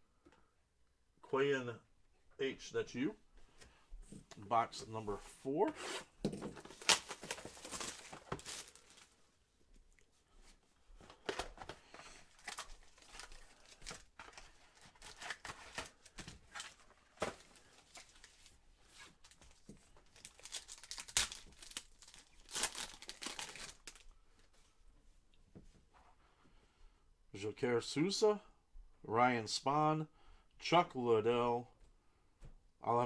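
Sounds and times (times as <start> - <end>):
plastic wrapping tearing and crinkling: 6.6 - 9.2, 11.3 - 24.1.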